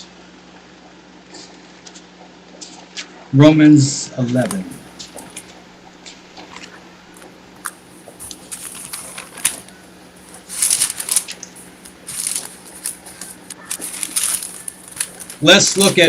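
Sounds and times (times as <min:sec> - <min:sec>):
low steady hum: 0:00.0 - 0:16.0
paper pages rustling: 0:04.4 - 0:16.0.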